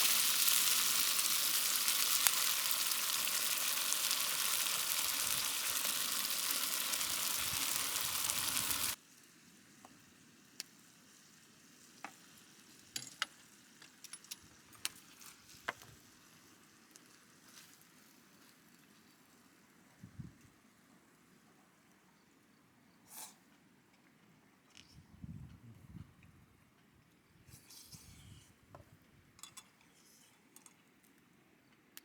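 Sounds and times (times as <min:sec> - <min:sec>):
food sizzling in a pan: 0:00.0 - 0:13.8
faint ticks and clicks: 0:28.7 - 0:32.0.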